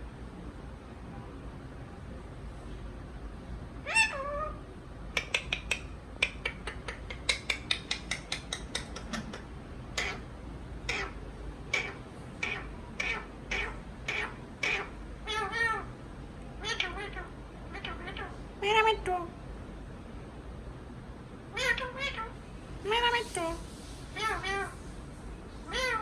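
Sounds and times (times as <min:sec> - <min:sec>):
parakeet calling: 0:03.8 - 0:04.6, 0:05.2 - 0:15.9, 0:16.6 - 0:18.8, 0:21.5 - 0:24.8, 0:25.7 - 0:26.0
parakeet screeches: 0:03.8 - 0:04.6, 0:10.0 - 0:10.2, 0:10.8 - 0:15.9, 0:16.6 - 0:18.3, 0:21.5 - 0:22.3, 0:24.1 - 0:24.8, 0:25.7 - 0:26.0.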